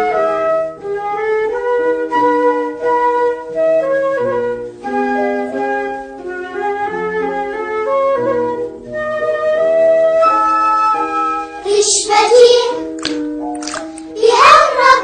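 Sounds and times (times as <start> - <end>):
flute-like melody: 0.0 - 12.2.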